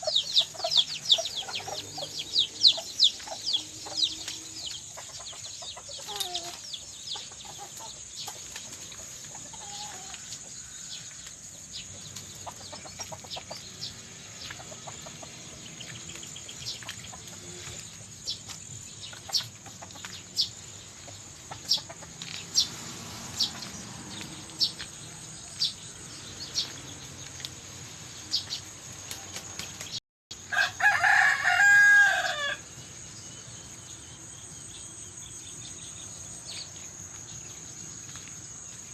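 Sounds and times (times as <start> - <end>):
chickens clucking: 0.0 - 25.7
high insect trill: 0.0 - 38.9
rooster crowing: 30.5 - 32.7.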